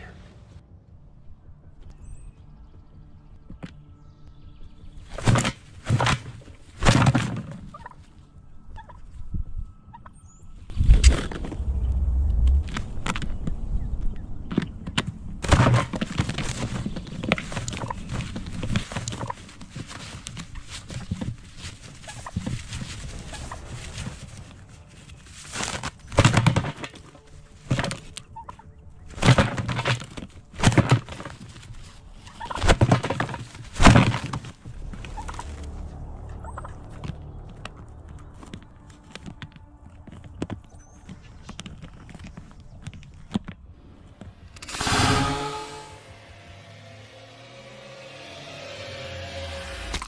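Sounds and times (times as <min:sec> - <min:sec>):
turkey gobbling: 0:07.7 - 0:08.1, 0:08.8 - 0:09.1, 0:17.6 - 0:18.2, 0:22.0 - 0:22.5, 0:28.2 - 0:28.8, 0:32.2 - 0:33.4, 0:36.4 - 0:36.8.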